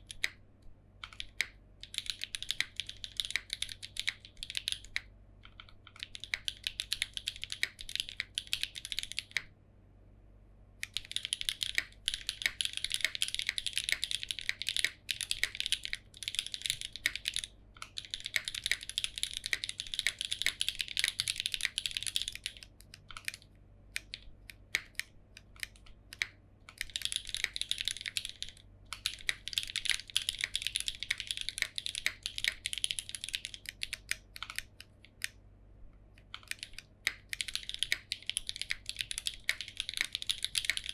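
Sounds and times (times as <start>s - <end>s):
mechanical keyboard key clacks: 36.3s - 40.9s.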